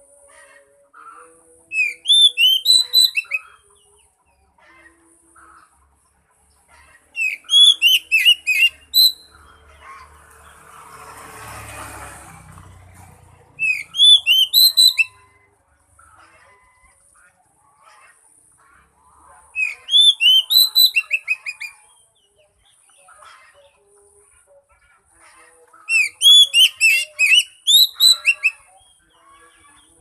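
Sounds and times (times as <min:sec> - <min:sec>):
bird singing whistled notes: 0:01.7 - 0:03.4, 0:07.2 - 0:09.3, 0:13.6 - 0:15.3, 0:19.6 - 0:21.8, 0:25.9 - 0:28.6.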